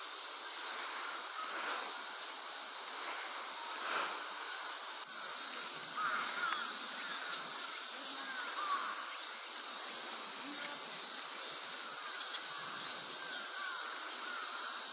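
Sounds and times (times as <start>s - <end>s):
cicada chorus: 0.0s - 14.9s.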